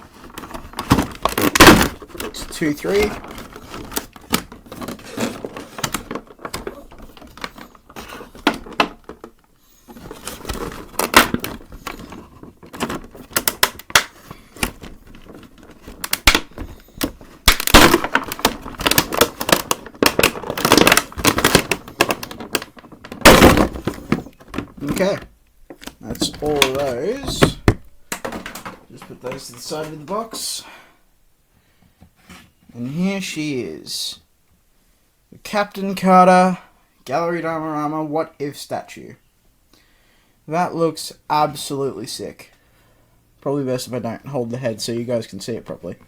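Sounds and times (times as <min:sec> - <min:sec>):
plastic packaging crinkling: 0:00.0 - 0:30.4.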